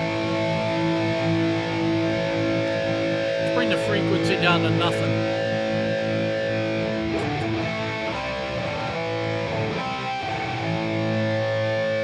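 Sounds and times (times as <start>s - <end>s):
electric guitar strumming chords: 2.4s - 9.8s.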